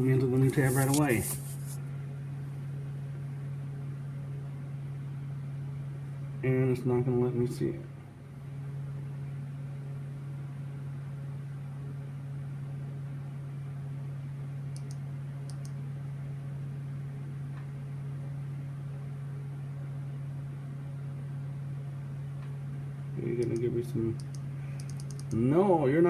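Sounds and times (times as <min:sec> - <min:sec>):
sharp high clicks: 0:14.7 - 0:15.8, 0:23.4 - 0:25.4.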